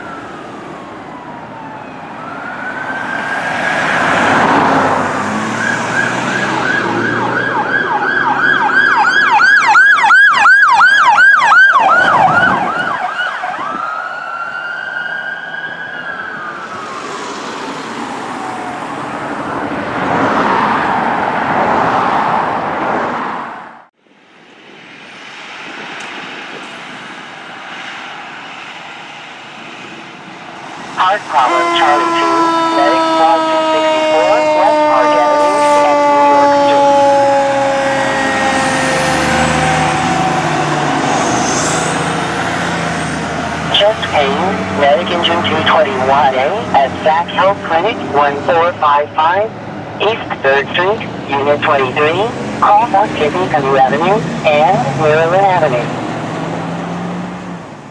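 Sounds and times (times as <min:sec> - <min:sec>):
fire engine siren wailing: 0:00.0 - 0:22.8, 0:30.2 - 0:57.2
traffic noise: 0:00.0 - 0:57.9
loud rough horn blasts: 0:31.2 - 0:41.9.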